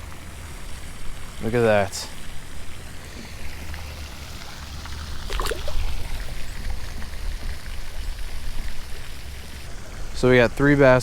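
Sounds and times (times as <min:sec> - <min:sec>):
fountain splashing: 0:00.0 - 0:11.0
wind rumble on microphone: 0:02.3 - 0:10.2.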